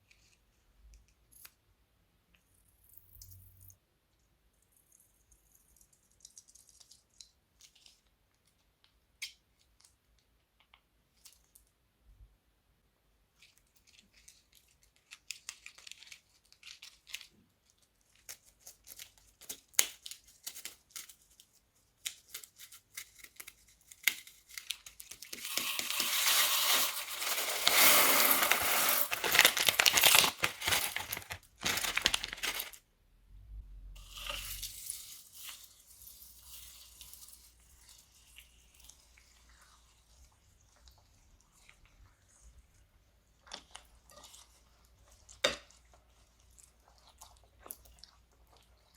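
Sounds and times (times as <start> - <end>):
plastic bags crinkling: 24.8 - 32.8.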